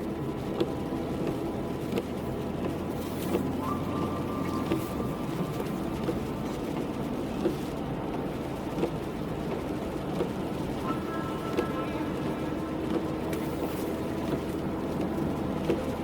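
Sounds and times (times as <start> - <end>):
vehicle running rumble: 0.0 - 16.0
road hiss: 1.4 - 16.0.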